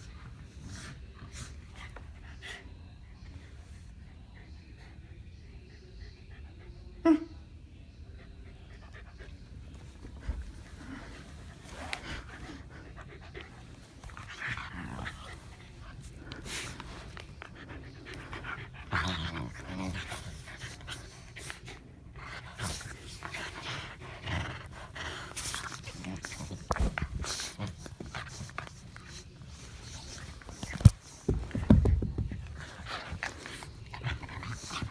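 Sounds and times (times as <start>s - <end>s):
dogs panting: 0.0s - 7.0s, 8.0s - 34.9s
dogs scuffling: 25.0s - 34.9s.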